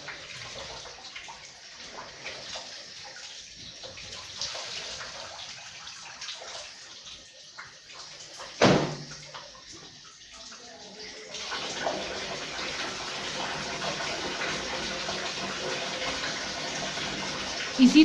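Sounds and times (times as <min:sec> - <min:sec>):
water splashing in tub: 0:00.0 - 0:18.0
loud sudden splash: 0:08.6 - 0:09.1.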